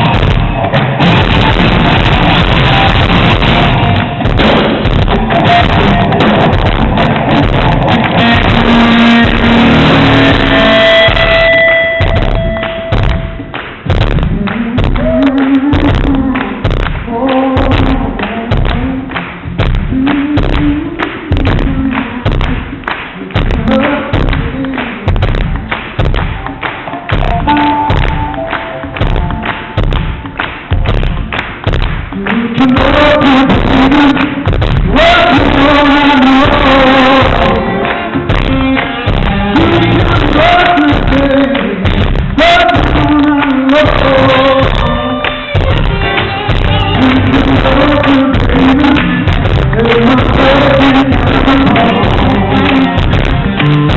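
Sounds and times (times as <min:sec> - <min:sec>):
heavy drum hits: 0:00.0 - 0:18.9, 0:25.1 - 0:26.5, 0:27.1 - 0:32.2
drum thumps: 0:00.0 - 0:45.0, 0:45.6 - 0:53.9
live blues-rock band playing: 0:00.0 - 0:53.9
man singing lead vocal: 0:05.0 - 0:12.4, 0:14.0 - 0:25.9, 0:30.9 - 0:53.9
man singing long sliding notes: 0:32.2 - 0:45.6, 0:46.4 - 0:53.3.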